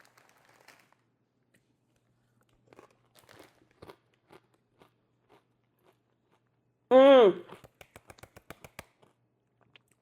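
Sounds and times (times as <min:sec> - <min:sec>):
chip being chewed: 0:02.4 - 0:06.6.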